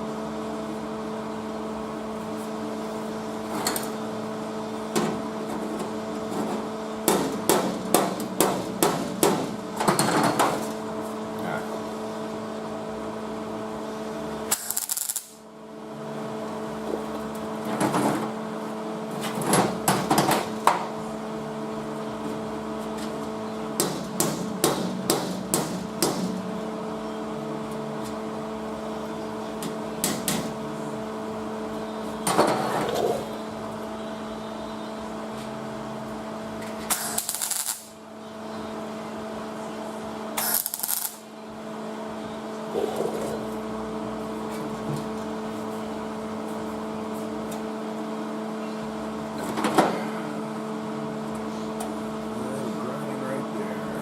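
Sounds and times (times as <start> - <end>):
steady electrical hum: 0.0 - 54.0
welding crackling hiss: 14.5 - 15.4, 36.8 - 38.0, 40.4 - 41.3.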